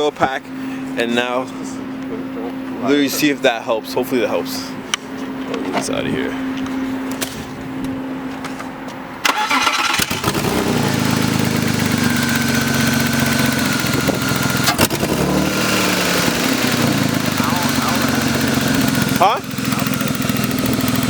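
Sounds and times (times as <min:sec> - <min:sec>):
car engine starting and idling: 0:09.1 - 0:21.0.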